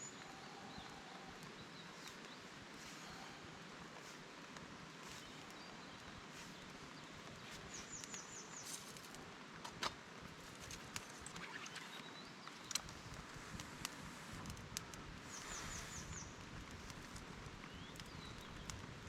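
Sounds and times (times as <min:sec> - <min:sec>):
steady hiss: 0:00.0 - 0:18.2
bird chirping: 0:05.1 - 0:08.8, 0:11.1 - 0:12.9.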